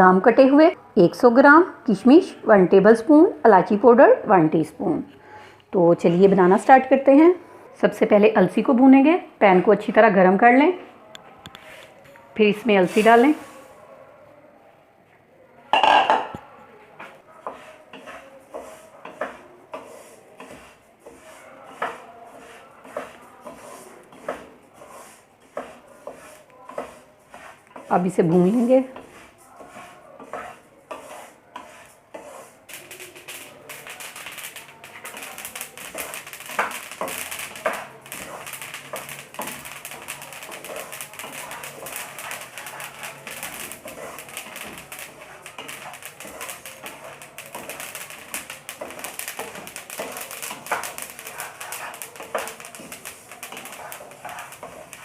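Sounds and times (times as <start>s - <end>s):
seeds crackling in a hot pan: 11.6s - 13.6s, 17.4s - 55.0s.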